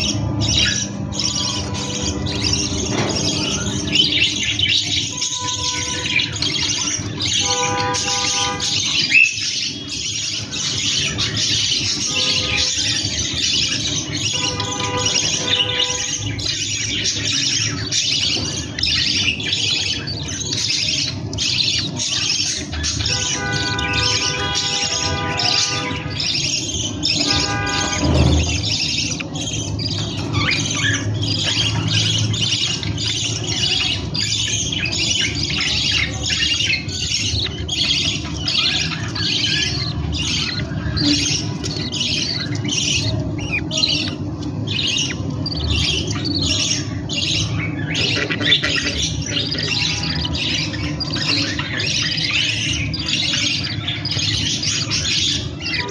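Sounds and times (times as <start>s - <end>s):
budgerigars chattering: 0.0s - 55.9s.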